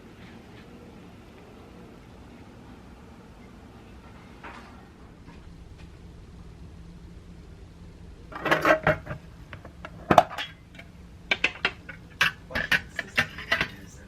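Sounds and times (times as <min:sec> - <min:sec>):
dishes and cutlery clinking: 0:11.3 - 0:14.0.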